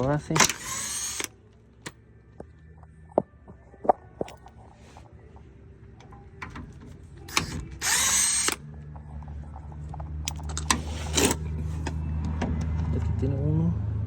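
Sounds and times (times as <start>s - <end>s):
power wrench spinning: 0.0s - 1.4s, 7.2s - 8.6s.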